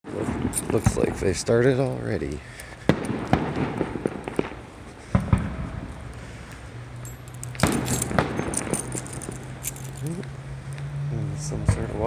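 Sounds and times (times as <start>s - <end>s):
fireworks bangs: 0.1s - 7.0s, 7.6s - 9.6s
light clinks: 6.9s - 10.9s.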